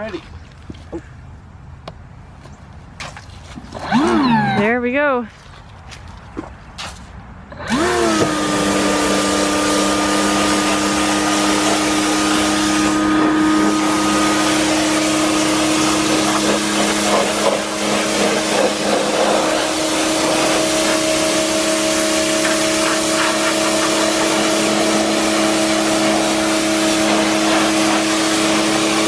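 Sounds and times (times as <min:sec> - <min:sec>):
pressure washer motor whine: 0:03.8 - 0:04.7, 0:07.5 - 0:29.0
water jet spraying: 0:07.7 - 0:29.0.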